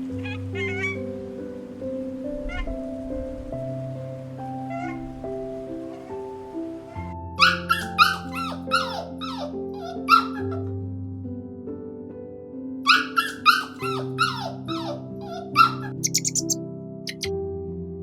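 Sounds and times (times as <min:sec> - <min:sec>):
small dog yapping: 0:00.0 - 0:01.0, 0:02.4 - 0:02.8, 0:04.7 - 0:05.2, 0:07.4 - 0:10.7, 0:12.9 - 0:17.3
soft background music: 0:00.0 - 0:18.0.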